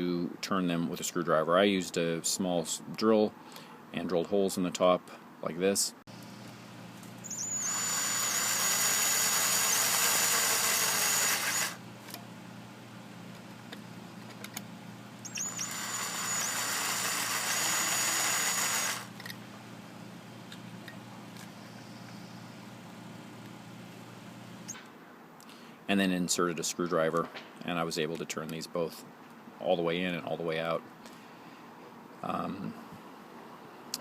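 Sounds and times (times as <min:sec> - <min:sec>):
electric drill whining: 0:07.2 - 0:11.8, 0:15.2 - 0:19.3.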